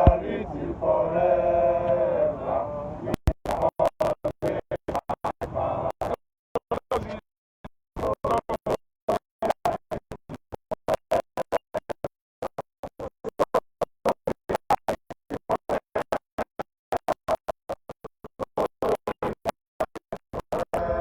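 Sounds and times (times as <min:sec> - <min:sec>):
protesters chanting: 0:00.0 - 0:03.7, 0:20.8 - 0:21.0.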